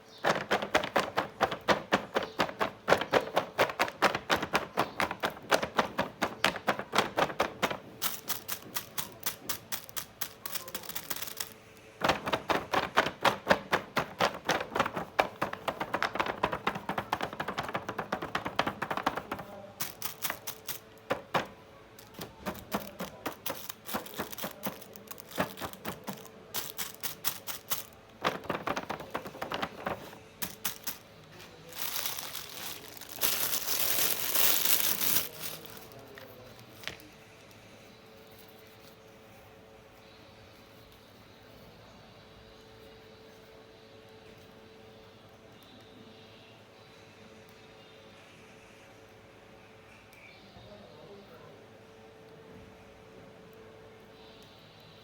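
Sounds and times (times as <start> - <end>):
plastic tapping and clicking: 0.2 - 31.0.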